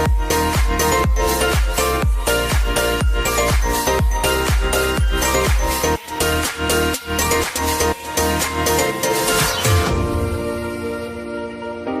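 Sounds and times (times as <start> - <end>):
four-on-the-floor kick drum: 0.0 - 5.7
dance music: 0.0 - 12.0.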